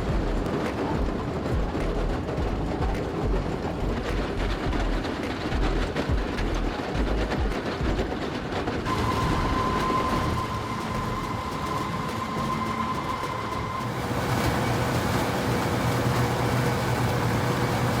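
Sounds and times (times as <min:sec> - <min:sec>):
heavy machinery rumbling and rattling: 0:00.0 - 0:18.0
steady high tone: 0:08.9 - 0:14.2.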